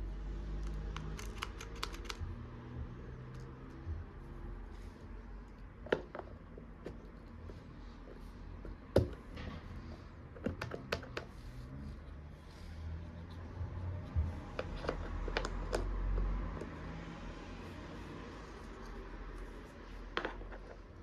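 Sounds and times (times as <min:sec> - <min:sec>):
toy kitchen pieces clicking: 0:00.6 - 0:02.2.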